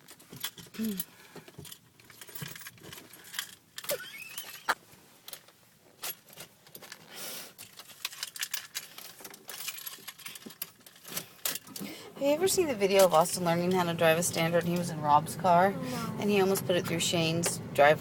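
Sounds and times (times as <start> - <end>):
rising squeak: 3.9 - 4.8.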